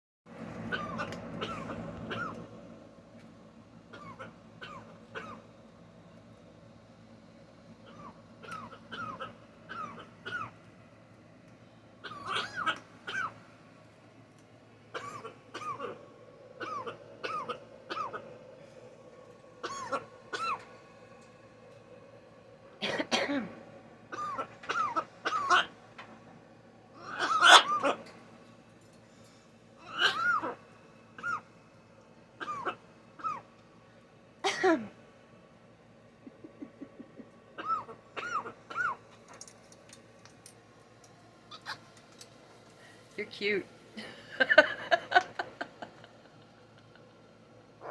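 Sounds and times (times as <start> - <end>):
macaw coughing: 0.6 - 2.5, 3.9 - 5.5, 7.8 - 10.6, 12.0 - 13.4, 14.9 - 18.4, 19.6 - 20.7, 22.8 - 25.8, 27.0 - 28.1, 29.8 - 30.6, 31.2 - 31.5, 32.4 - 33.5, 34.4 - 34.9, 36.3 - 39.1, 41.5 - 41.8.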